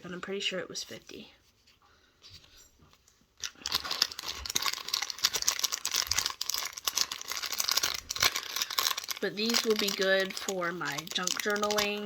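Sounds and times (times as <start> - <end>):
plastic packaging crinkling: 3.0 - 12.0.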